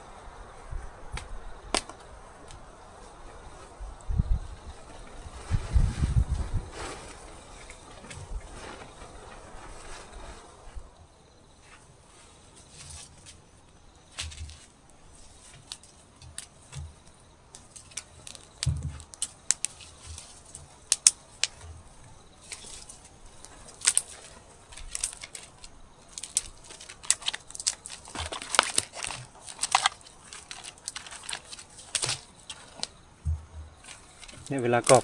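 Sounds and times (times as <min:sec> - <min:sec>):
dry twigs snapping: 0:01.1 - 0:02.6, 0:14.1 - 0:21.8, 0:22.4 - 0:35.0
dull knocks: 0:33.2 - 0:33.8.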